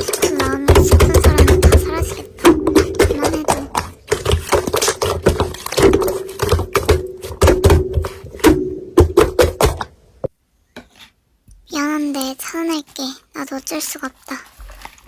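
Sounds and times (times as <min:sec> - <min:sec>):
rapid clicking and tapping: 0:00.0 - 0:09.9.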